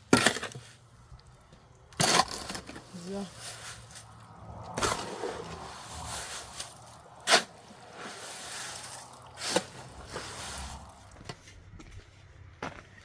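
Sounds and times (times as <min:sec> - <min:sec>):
scraping and rustling: 0:02.0 - 0:11.6.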